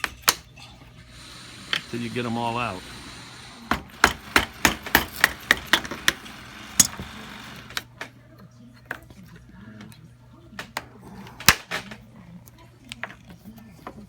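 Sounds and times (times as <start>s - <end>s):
hammer knocking: 3.7s - 7.3s.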